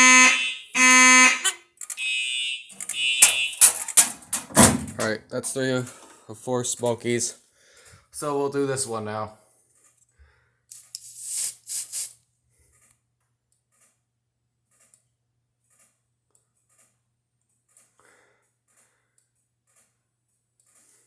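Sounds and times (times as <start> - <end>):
handling rustles and clicks: 2.7 - 6.2
aerosol spray hissing: 10.7 - 12.2.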